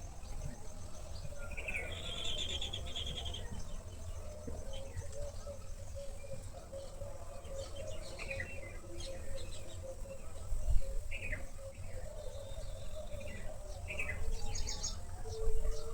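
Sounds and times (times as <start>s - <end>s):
birds chirping: 0.0s - 9.9s.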